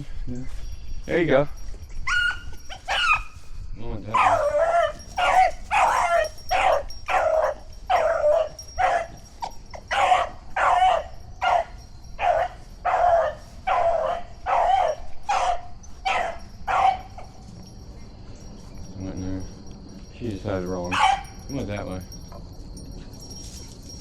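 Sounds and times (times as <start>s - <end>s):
dog barking: 2.1s - 3.3s, 4.1s - 17.4s, 20.9s - 21.4s.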